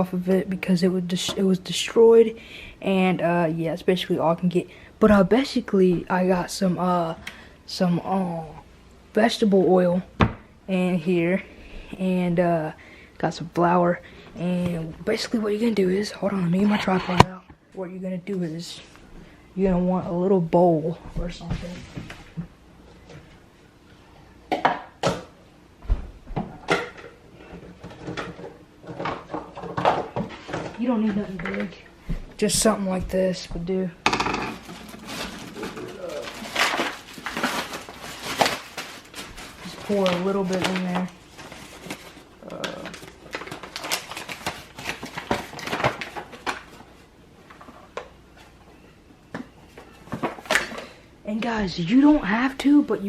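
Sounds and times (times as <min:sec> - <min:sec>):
bowls clicking and rustling: 0:34.2 - 0:46.8.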